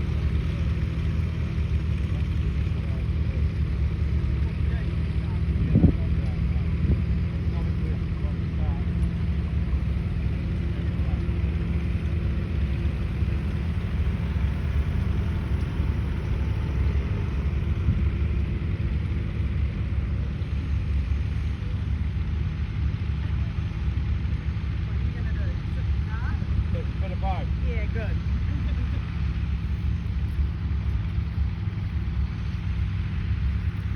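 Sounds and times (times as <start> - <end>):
tractor engine rumbling: 0.0 - 33.9.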